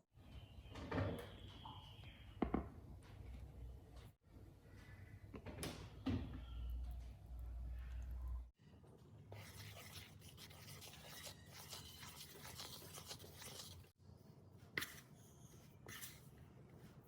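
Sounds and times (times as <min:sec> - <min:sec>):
hands rubbing food on surface: 0:09.4 - 0:14.0, 0:14.8 - 0:17.0.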